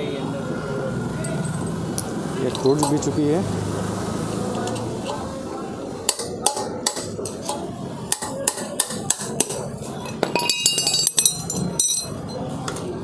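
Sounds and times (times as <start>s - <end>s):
hammer tapping on metal: 6.1s - 12.1s.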